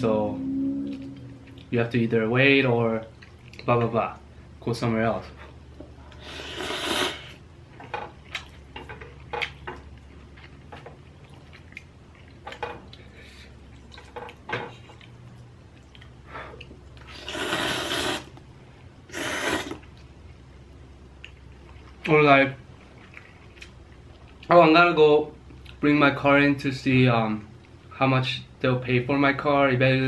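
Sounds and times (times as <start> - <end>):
moist chewing and mouth smacks: 8.2 - 13.1, 13.7 - 17.1.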